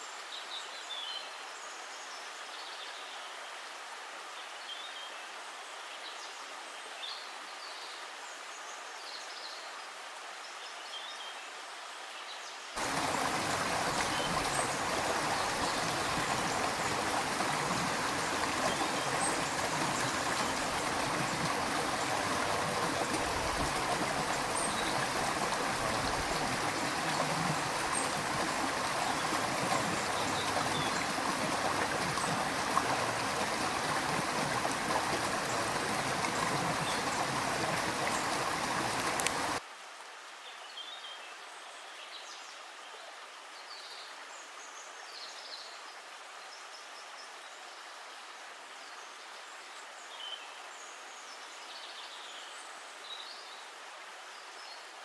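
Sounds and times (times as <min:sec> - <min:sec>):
stream water rushing: 0:12.8 - 0:39.6.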